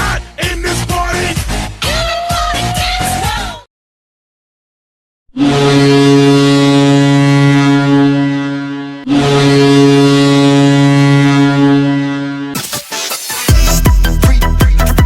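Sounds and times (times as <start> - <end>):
arena goal horn blasts: 5.3 - 12.6.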